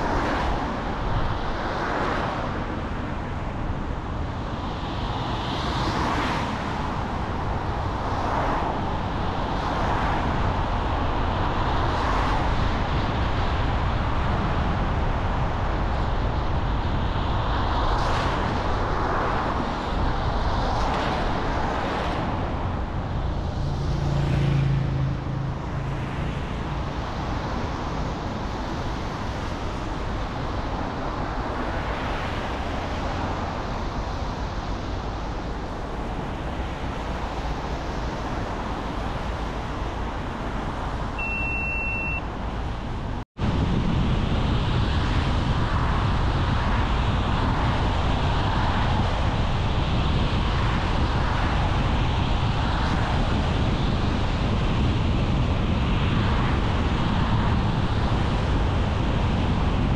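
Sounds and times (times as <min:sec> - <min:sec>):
passing traffic: 0:00.0 - 0:59.9
road and tyre noise: 0:00.0 - 0:59.9.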